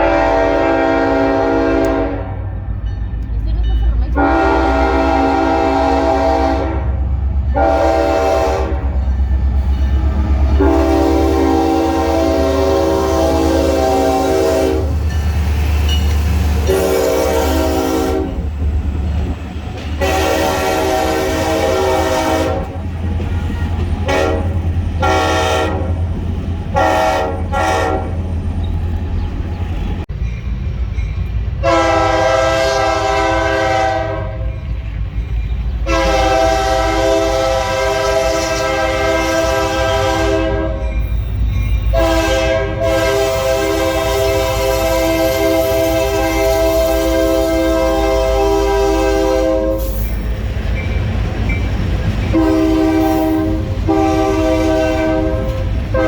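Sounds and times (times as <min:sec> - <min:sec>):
locomotive air horn blasts: 0:00.0 - 0:02.6, 0:04.1 - 0:09.1, 0:10.0 - 0:15.1, 0:16.6 - 0:18.5, 0:20.0 - 0:26.1, 0:26.7 - 0:28.3, 0:31.6 - 0:34.6, 0:35.8 - 0:40.9, 0:41.9 - 0:50.2, 0:52.3 - 0:56.0
low train rumble: 0:00.0 - 0:56.0.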